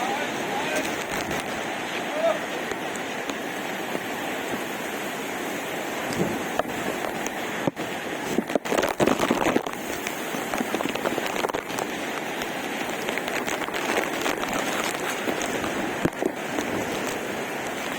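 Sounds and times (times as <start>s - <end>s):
waterfall rushing: 0.0s - 17.9s
wind gusts on microphone: 0.0s - 17.9s
crackling water drops: 0.7s - 1.6s, 6.0s - 17.9s.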